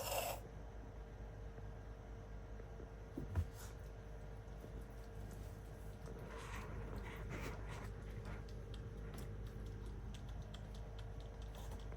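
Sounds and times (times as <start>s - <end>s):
pet wheezing: 0.0s - 0.4s.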